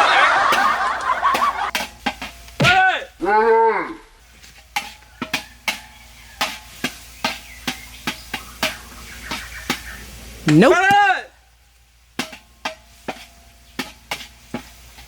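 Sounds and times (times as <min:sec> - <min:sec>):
metal utensil tapping frying pan: 0:00.5 - 0:02.6, 0:04.5 - 0:11.1, 0:12.0 - 0:15.0.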